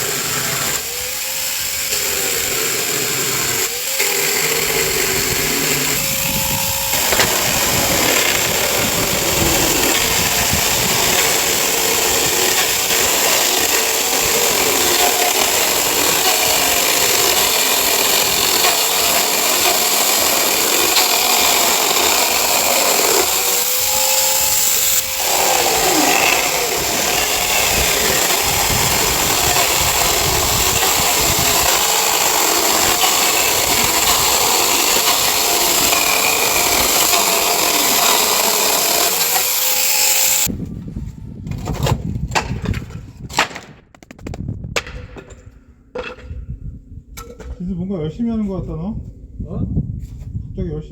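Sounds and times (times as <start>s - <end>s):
chainsaw cutting wood: 0.0s - 40.5s
wood pieces knocking: 5.8s - 40.5s, 42.3s - 45.4s.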